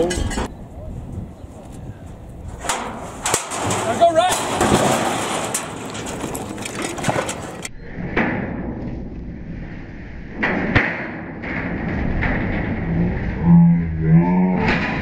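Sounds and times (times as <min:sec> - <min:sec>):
metal gates clanking: 0:02.6 - 0:07.8.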